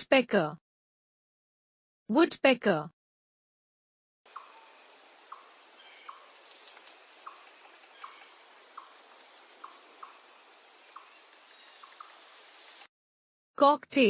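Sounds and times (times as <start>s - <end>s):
crickets chirping: 4.3s - 12.9s
sharp high chirps: 4.3s - 12.9s
woodpecker calling: 4.3s - 12.9s.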